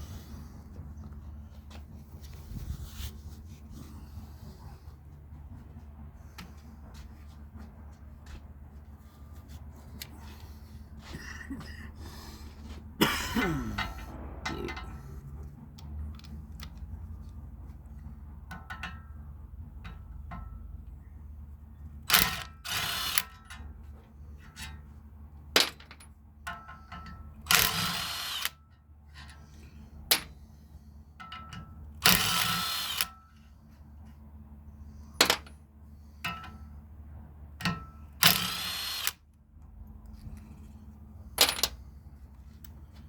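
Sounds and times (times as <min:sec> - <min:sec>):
power tool running in bursts: 0:22.1 - 0:23.2, 0:27.5 - 0:28.6, 0:32.0 - 0:33.2, 0:38.2 - 0:39.2.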